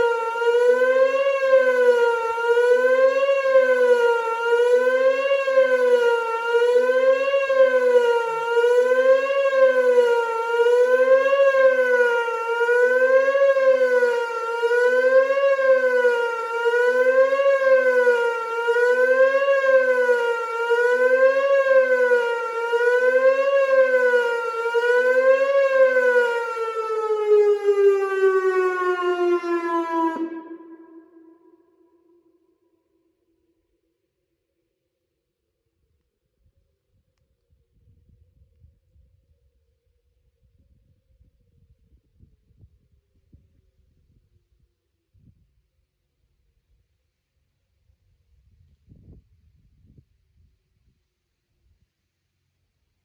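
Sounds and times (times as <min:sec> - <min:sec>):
wavering electronic warning siren: 0:00.0 - 0:33.0.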